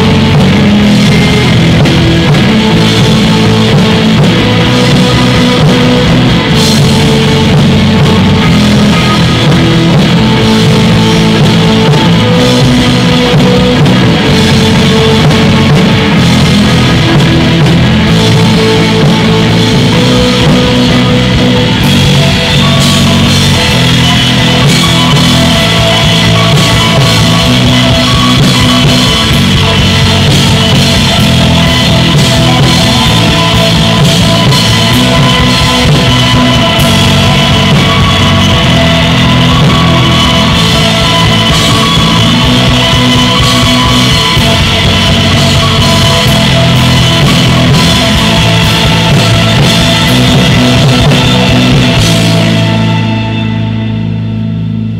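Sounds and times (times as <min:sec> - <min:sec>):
cymbals: 0:00.0 - 0:53.7
rock band playing: 0:00.0 - 0:54.9.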